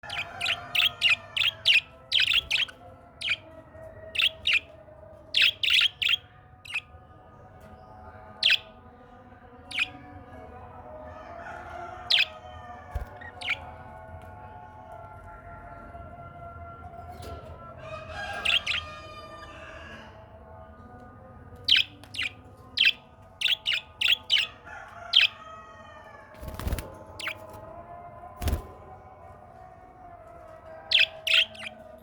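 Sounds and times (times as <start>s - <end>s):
parrot chirping: 0.0s - 3.4s, 5.4s - 6.8s, 21.7s - 24.5s, 30.9s - 31.8s
soft drawn-out bird calls: 0.0s - 4.7s, 12.0s - 13.7s, 18.2s - 20.2s.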